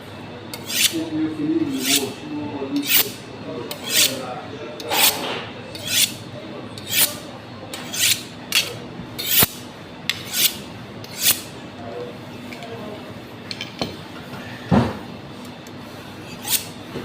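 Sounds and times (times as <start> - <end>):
knife scraping on sharpener: 0.5 - 1.0, 1.7 - 2.2, 2.8 - 4.2, 4.8 - 6.2, 6.8 - 11.5, 16.2 - 16.8.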